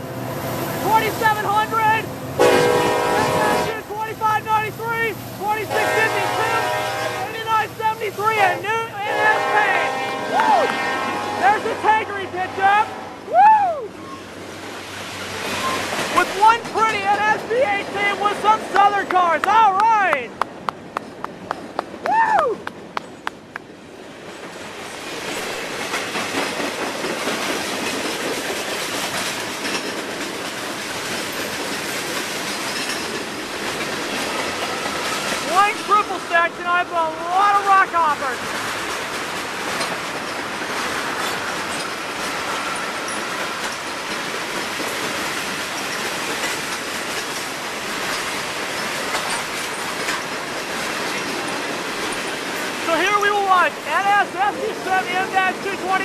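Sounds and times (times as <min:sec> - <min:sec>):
train wheels rumbling on rail: 0:00.0 - 0:56.0
clicking over rail joints: 0:38.5 - 0:52.8.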